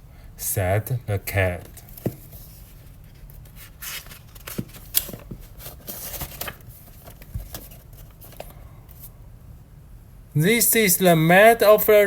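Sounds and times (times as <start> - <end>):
paper rustling: 1.8 - 9.1.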